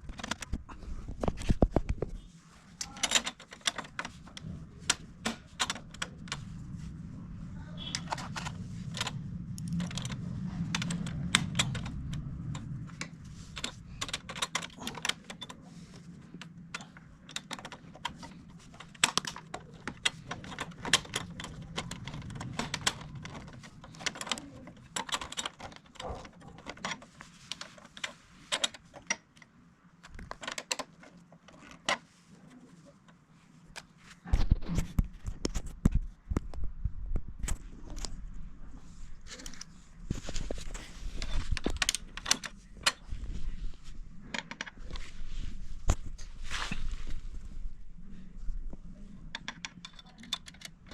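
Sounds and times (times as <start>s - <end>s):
low hum: 4.2s - 25.2s.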